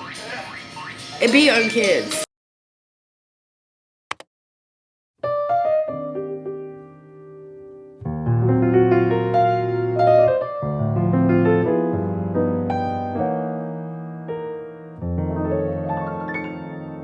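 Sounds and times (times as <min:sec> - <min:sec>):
piano chords with melody: 0:05.2 - 0:17.0.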